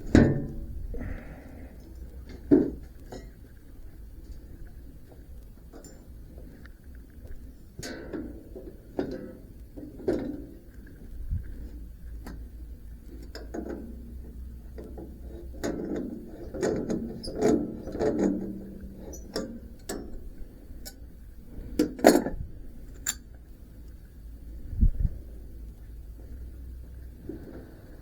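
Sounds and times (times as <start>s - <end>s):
metal clicks and knocks: 0.0s - 0.8s.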